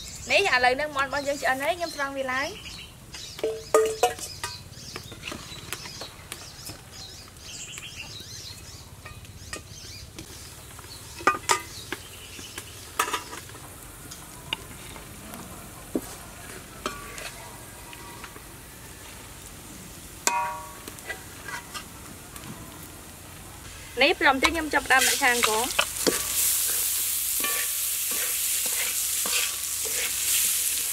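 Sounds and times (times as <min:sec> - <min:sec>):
steady low hiss: 0:00.0 - 0:30.9
metal utensil scraping a pot: 0:16.6 - 0:17.4, 0:20.3 - 0:21.9, 0:24.8 - 0:30.4.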